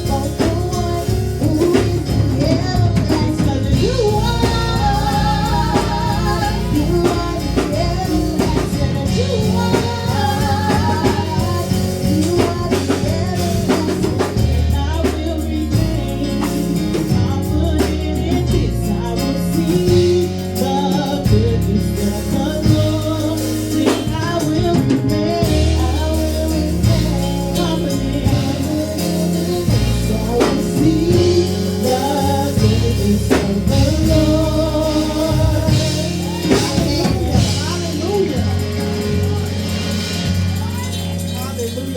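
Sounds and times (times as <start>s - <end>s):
drum kit: 0.0s - 41.9s
gospel singing: 0.0s - 41.9s
low bass line: 0.0s - 41.9s.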